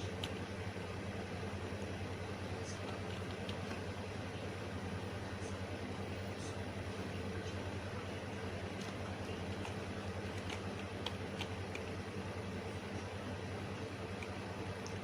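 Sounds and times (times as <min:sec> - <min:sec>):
low electrical hum with hiss: 0:00.0 - 0:15.0.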